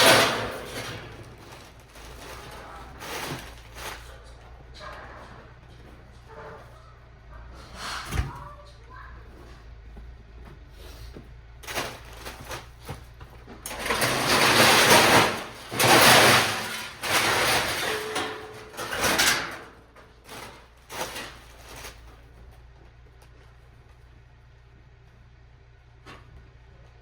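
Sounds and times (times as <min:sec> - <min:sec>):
scrap metal scraping and rattling: 0:00.0 - 0:08.4, 0:10.9 - 0:22.5.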